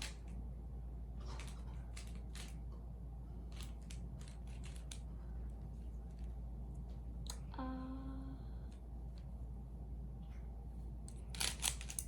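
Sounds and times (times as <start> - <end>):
puzzle cube clicking and scraping: 3.5 - 5.1, 11.3 - 12.0.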